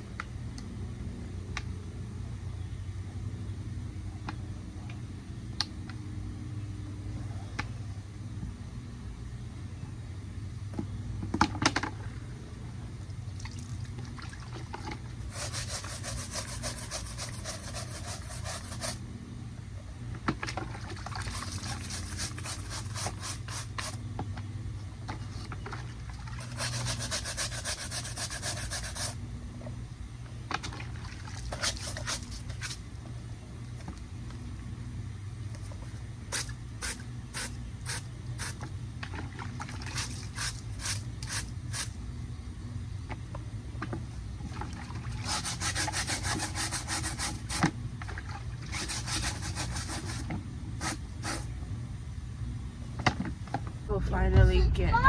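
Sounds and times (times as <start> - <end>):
steady low hum: 0.0 - 55.0
shoe scrubbing strokes: 15.2 - 19.0, 21.3 - 24.0, 26.4 - 29.2, 45.1 - 47.6, 48.7 - 51.5.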